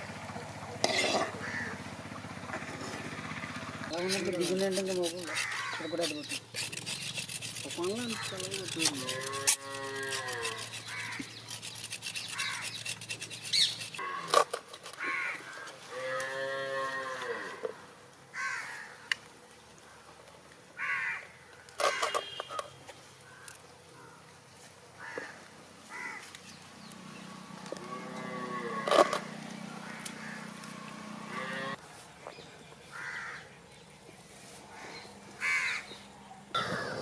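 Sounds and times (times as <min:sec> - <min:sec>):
cattle mooing: 0:09.1 - 0:10.6, 0:15.9 - 0:17.7, 0:27.7 - 0:29.2, 0:31.2 - 0:31.8.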